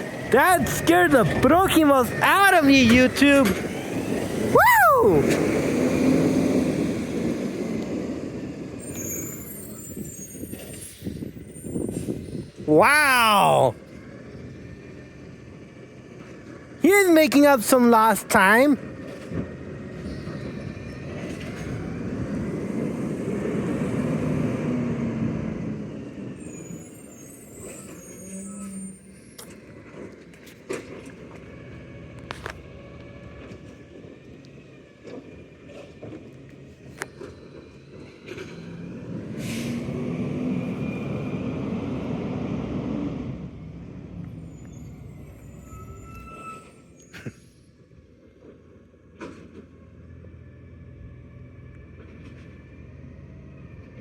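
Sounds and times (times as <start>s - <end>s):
garbage truck driving past: 0.0s - 12.6s.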